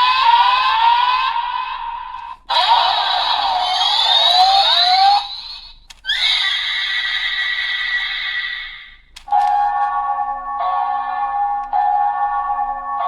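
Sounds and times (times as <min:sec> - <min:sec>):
toy electronic sound effects: 0:02.2 - 0:09.9.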